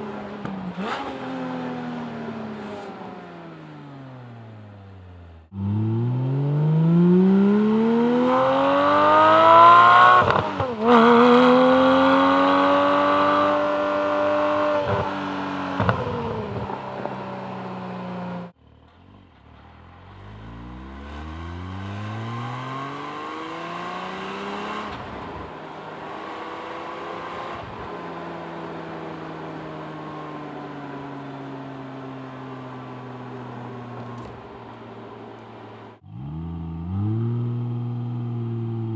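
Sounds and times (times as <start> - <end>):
car cruising steadily: 0.0 - 38.9.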